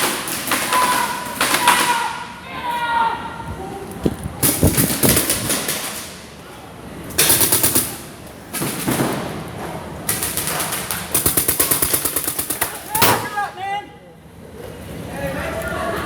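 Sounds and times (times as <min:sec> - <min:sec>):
paintball markers firing: 0:10.1 - 0:13.0.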